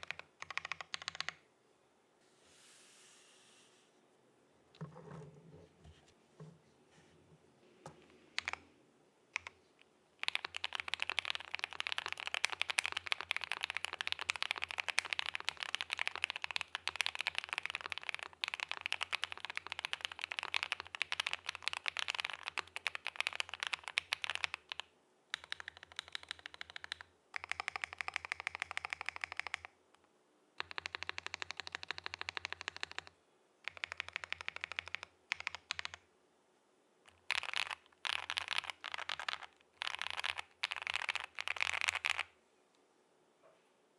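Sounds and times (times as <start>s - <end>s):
mechanical keyboard typing: 0.0s - 1.4s, 8.4s - 8.6s, 9.4s - 9.6s, 10.2s - 29.7s, 30.6s - 33.1s, 33.7s - 36.0s, 37.1s - 42.3s.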